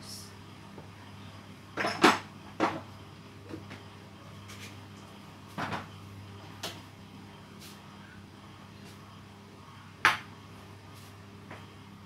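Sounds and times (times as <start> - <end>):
steady low hum: 0.0 - 12.0
kitchen items knocking and clattering: 1.8 - 2.8.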